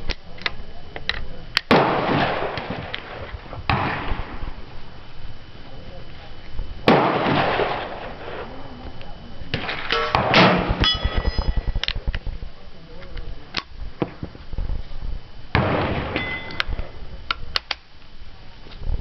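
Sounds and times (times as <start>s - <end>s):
loud burst of noise: 1.7s - 5.6s, 6.6s - 8.8s, 9.5s - 12.4s, 13.7s - 17.1s.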